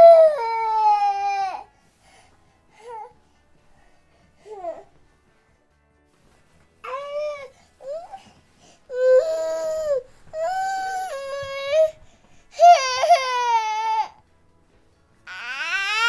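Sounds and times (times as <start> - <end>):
infant crying: 0.0 - 1.7, 6.8 - 8.3, 8.9 - 14.2, 15.3 - 16.0.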